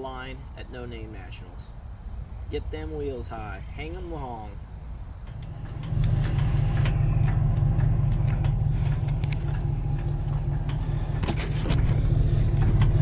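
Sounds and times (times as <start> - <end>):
car engine rumbling: 0.0 - 13.0
light clicks and ticks: 5.2 - 11.8.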